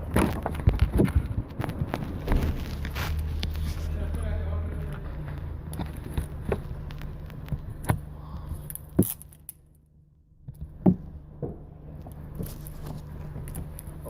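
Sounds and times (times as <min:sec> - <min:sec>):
sharp knocks and clicks: 0:00.0 - 0:02.6, 0:10.4 - 0:14.0
steady low hum: 0:00.0 - 0:14.0.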